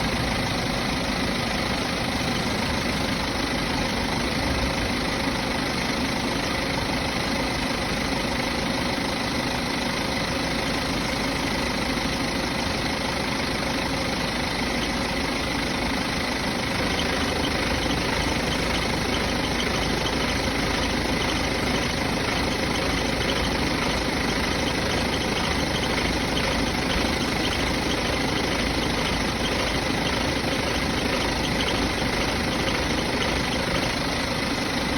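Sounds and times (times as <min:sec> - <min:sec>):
vehicle engine idling: 0:00.0 - 0:34.9.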